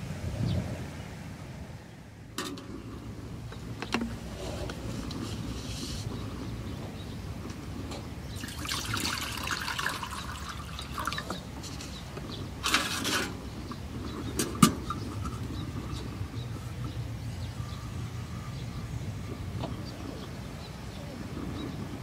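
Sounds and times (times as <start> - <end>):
liquid being poured: 8.4 - 11.4.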